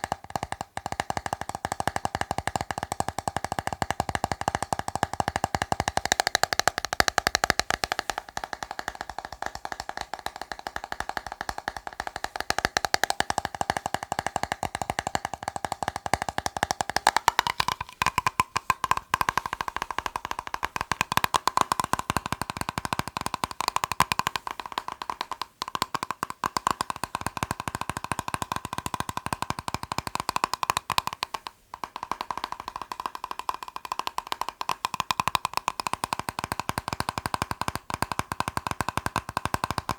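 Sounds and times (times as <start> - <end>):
fingers tapping on plastic box: 0.0 - 39.9.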